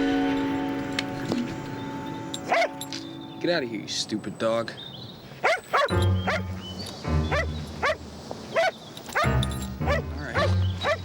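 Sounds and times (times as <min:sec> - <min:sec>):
background music: 0:00.0 - 0:04.3, 0:05.8 - 0:08.3, 0:09.1 - 0:11.0
dog barking: 0:02.5 - 0:02.8, 0:05.4 - 0:06.4, 0:07.3 - 0:11.0.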